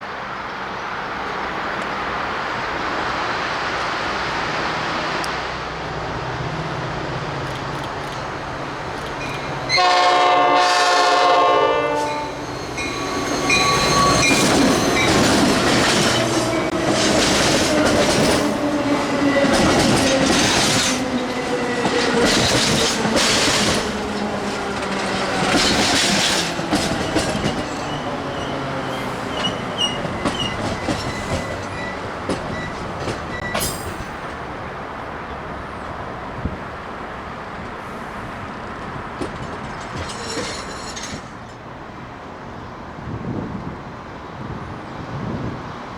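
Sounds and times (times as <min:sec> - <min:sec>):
train drone: 0:00.0 - 0:45.9
train air horn chord: 0:09.7 - 0:12.4
train wheels clacking over rail joints: 0:12.8 - 0:34.4, 0:38.6 - 0:41.7.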